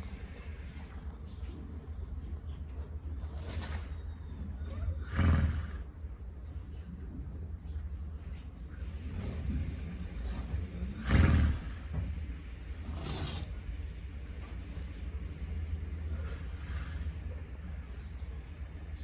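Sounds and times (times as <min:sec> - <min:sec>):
crickets chirping: 0:00.0 - 0:19.0
horse snoring: 0:03.2 - 0:06.2, 0:08.7 - 0:12.2, 0:12.8 - 0:13.7, 0:14.6 - 0:15.1, 0:15.8 - 0:18.1.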